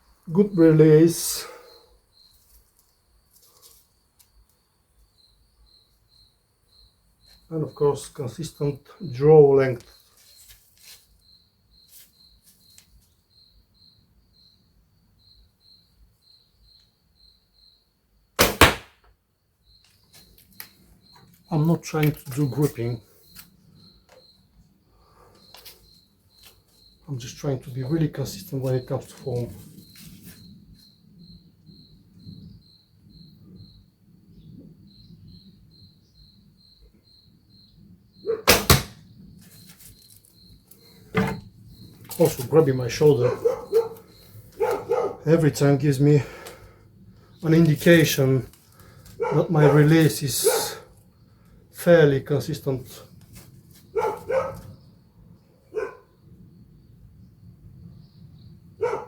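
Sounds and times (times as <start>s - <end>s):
crickets chirping: 0.0s - 59.0s
bow shot sharp cracks: 18.4s - 19.1s, 38.4s - 39.1s.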